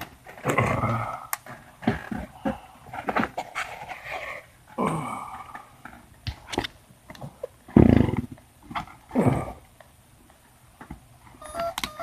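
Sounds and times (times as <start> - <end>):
dog yelping: 11.4 - 12.0
electronic start-up beeps: 11.4 - 12.0.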